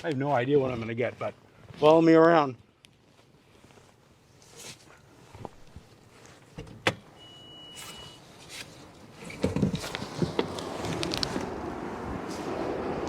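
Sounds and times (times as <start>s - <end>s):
electronic tone: 7.2s - 8.2s
blizzard wind noise: 9.8s - 13.0s.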